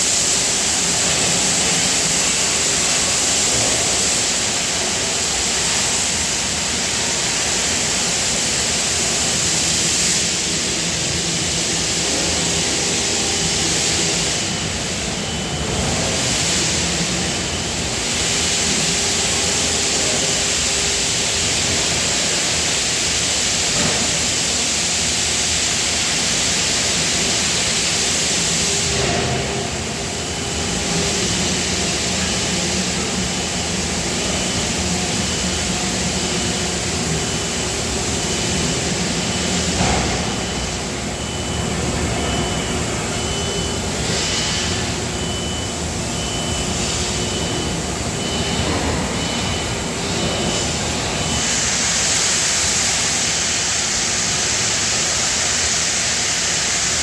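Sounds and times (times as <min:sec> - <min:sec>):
faint beep: 0:37.2 - 0:51.5.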